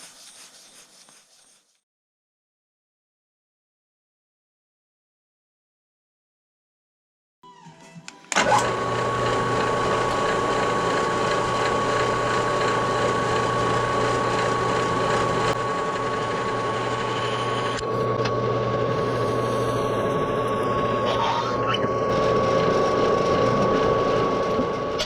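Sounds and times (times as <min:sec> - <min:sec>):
power tool motor whining: 0:08.3 - 0:25.0.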